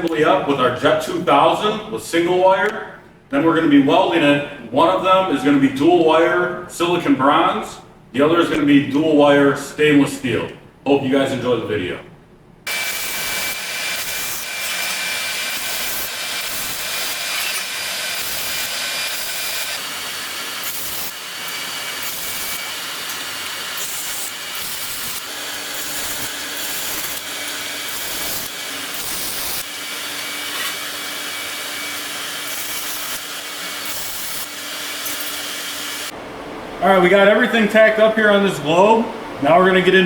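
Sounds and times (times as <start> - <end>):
laser welder hissing: 12.7 - 36.2.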